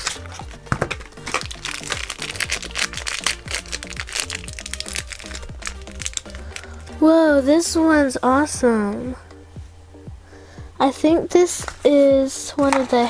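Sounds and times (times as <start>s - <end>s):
plastic packaging crinkling: 0.0s - 7.0s, 12.6s - 13.0s
background music: 0.0s - 13.0s.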